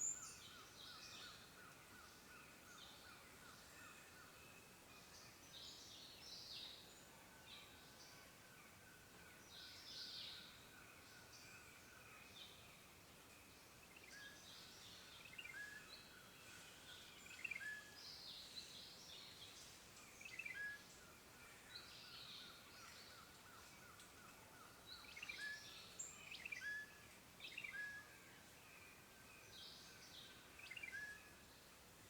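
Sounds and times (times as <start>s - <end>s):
faint outdoor hiss: 0.0s - 32.0s
songbirds chirping: 0.0s - 32.0s.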